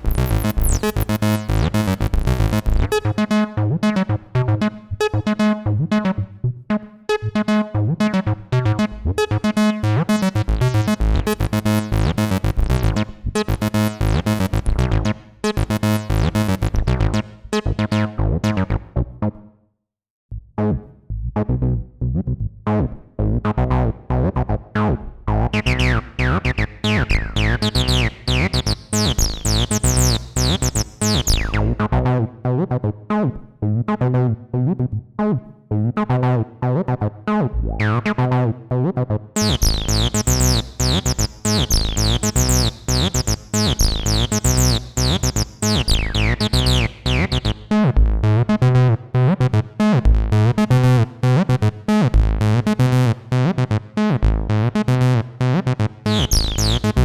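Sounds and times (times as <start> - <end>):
squelchy acid synth bassline: 0.0 - 6.2, 7.1 - 18.8, 25.3 - 31.9, 37.6 - 38.5, 39.4 - 57.0.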